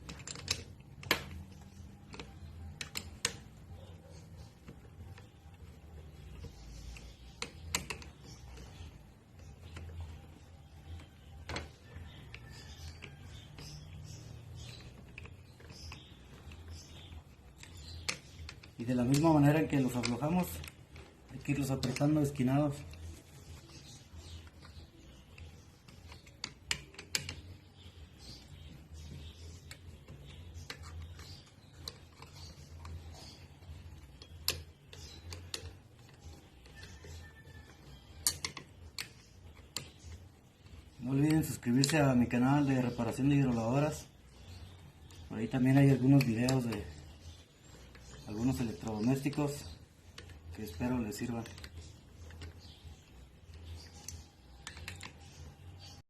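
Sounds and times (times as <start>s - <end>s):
metal parts and tools clicking: 0.0s - 56.0s
hand tool clicking on screws: 28.2s - 42.4s.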